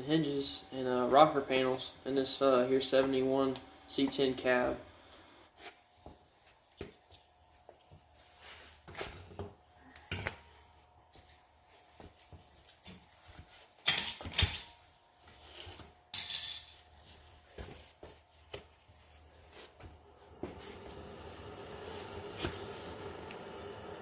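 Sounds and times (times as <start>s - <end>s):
faint mechanical hum: 0.0s - 24.0s
metal tools clinking: 16.1s - 16.9s.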